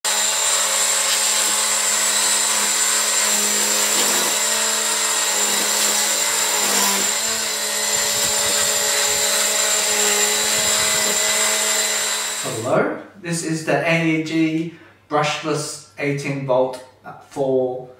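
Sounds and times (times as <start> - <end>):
line trimmer electric whine: 0.0 - 12.6.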